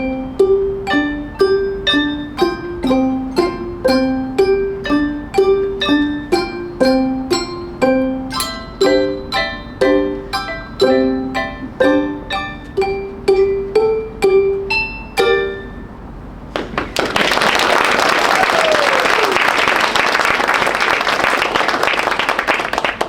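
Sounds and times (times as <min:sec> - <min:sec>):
handbell choir melody: 0:00.0 - 0:15.8
applause: 0:16.6 - 0:23.0.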